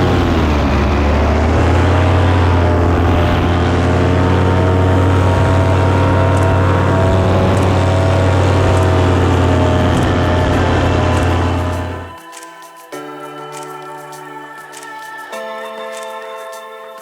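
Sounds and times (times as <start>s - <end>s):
paramotor engine and propeller: 0.0s - 12.1s.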